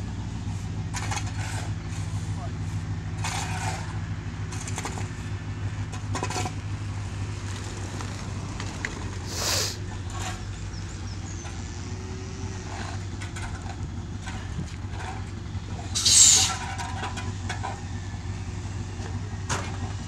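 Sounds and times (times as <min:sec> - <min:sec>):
vehicle engine humming: 0:00.0 - 0:20.0
brief hiss: 0:09.3 - 0:09.8.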